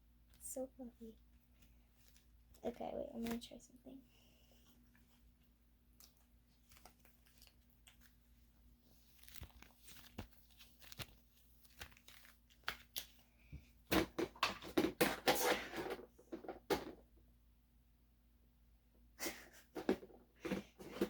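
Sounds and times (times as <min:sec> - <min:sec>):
crinkling and tearing handling: 0:01.2 - 0:03.6, 0:04.8 - 0:13.5.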